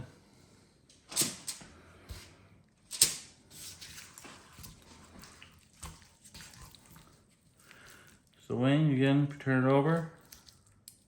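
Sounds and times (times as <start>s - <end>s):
wet cutting and handling: 2.9s - 8.4s, 9.9s - 11.0s.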